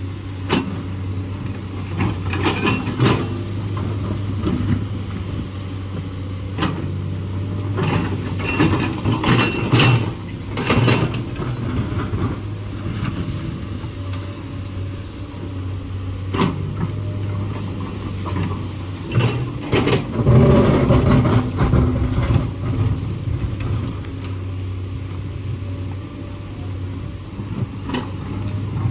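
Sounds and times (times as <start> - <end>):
excavator diesel engine running: 0.0 - 28.9
metallic clanks and knocks: 7.8 - 12.3.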